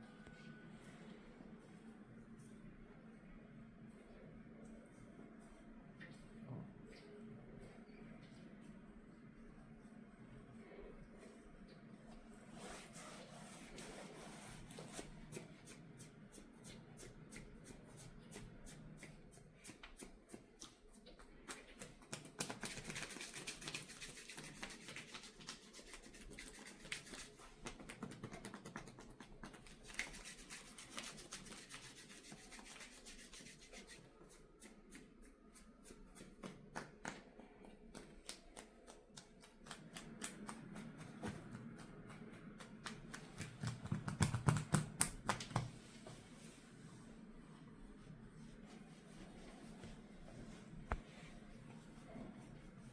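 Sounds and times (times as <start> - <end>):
hands rubbing skin and hair: 22.1 - 45.8.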